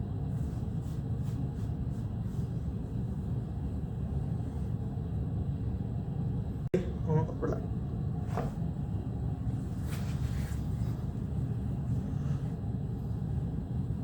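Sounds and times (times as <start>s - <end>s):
low background rumble: 0.0s - 14.0s.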